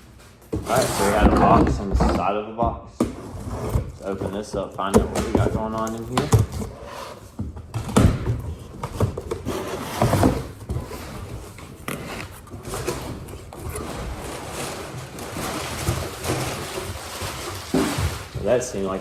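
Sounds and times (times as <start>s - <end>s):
cardboard knocks and scrapes: 0.3s - 2.3s, 3.0s - 18.6s
packing material rustling: 10.4s - 19.0s.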